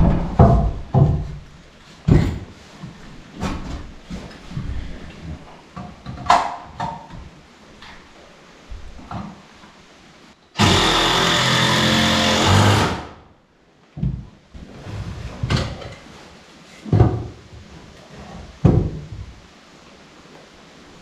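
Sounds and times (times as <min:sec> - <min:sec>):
heavy knocks on wood: 0:00.0 - 0:01.4, 0:10.6 - 0:13.1
power tool running: 0:10.6 - 0:13.2.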